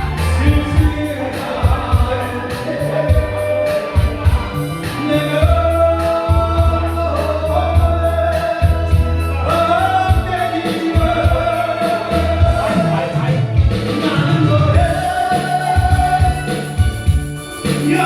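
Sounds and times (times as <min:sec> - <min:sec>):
person singing long sliding notes: 0:00.0 - 0:13.3, 0:14.0 - 0:17.0
steady beat and bass: 0:00.0 - 0:18.0.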